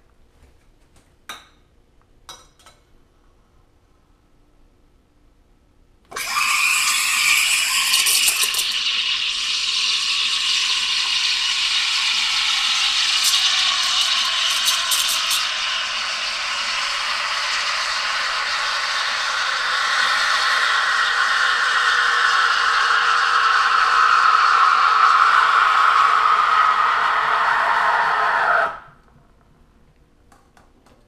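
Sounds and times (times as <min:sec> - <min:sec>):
coffee grinder grinding beans: 0:06.2 - 0:28.5.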